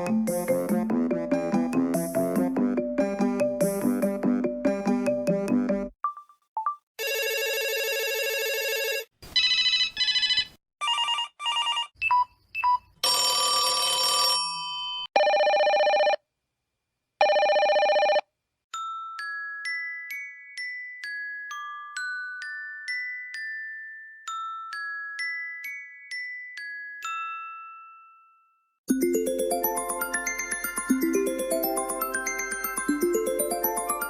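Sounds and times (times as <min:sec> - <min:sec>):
electronic telephone ring: 0:07.0 - 0:12.0, 0:13.0 - 0:16.2, 0:17.2 - 0:18.3
fast trilling telephone rings: 0:07.0 - 0:12.0, 0:15.2 - 0:16.2, 0:17.2 - 0:18.3
steady telephone rings: 0:07.0 - 0:12.0, 0:13.0 - 0:16.2, 0:17.2 - 0:18.3
melodic chime ringtone: 0:18.8 - 0:34.0.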